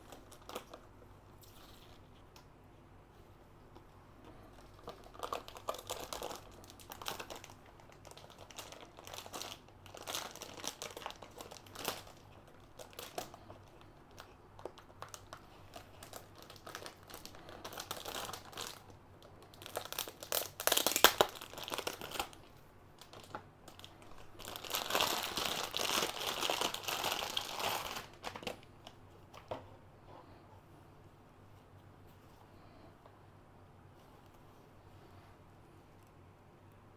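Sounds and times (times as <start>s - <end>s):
packaging wrap crinkling: 0.0s - 2.4s, 3.8s - 29.6s.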